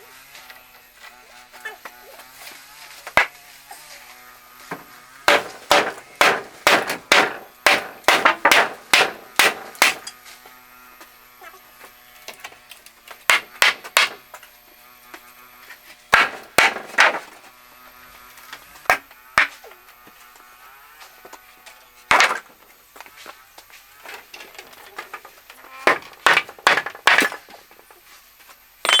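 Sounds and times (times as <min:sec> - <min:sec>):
hammer blows: 0:04.7 - 0:10.1, 0:16.1 - 0:17.3.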